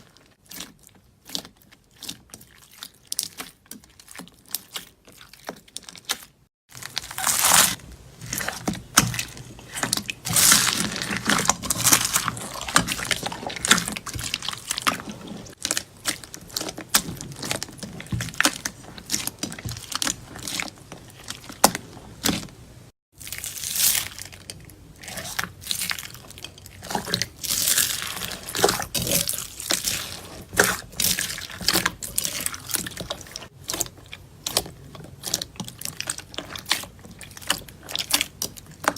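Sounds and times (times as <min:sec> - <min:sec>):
slime squished by hand: 0:00.0 - 0:22.5.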